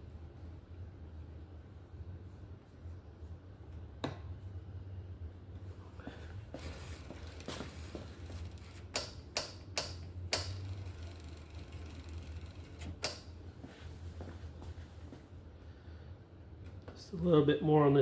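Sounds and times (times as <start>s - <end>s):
sharp clicks of bike brake: 8.4s - 13.3s.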